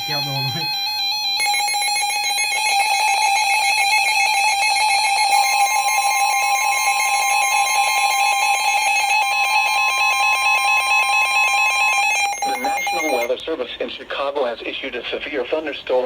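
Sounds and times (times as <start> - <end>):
electronic alert tones: 0.0 - 3.6, 5.4 - 13.3.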